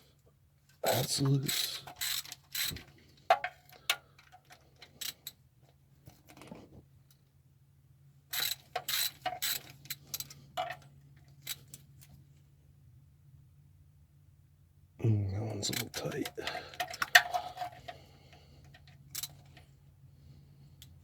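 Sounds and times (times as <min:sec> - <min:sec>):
ratchet clicking: 0:01.5 - 0:02.8, 0:08.3 - 0:10.4, 0:18.7 - 0:19.6.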